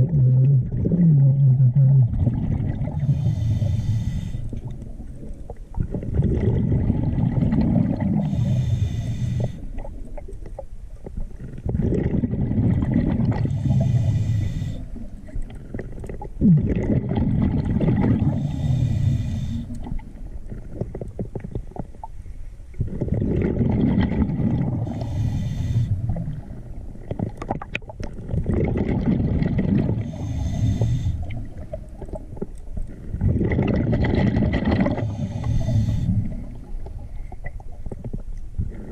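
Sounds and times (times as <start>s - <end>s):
exhaled bubbles gurgling: 0.0s - 38.9s
regulator inhale hiss: 3.0s - 4.6s, 8.2s - 9.8s, 13.5s - 15.1s, 18.3s - 19.9s, 24.8s - 26.3s, 30.0s - 31.6s, 35.0s - 36.6s.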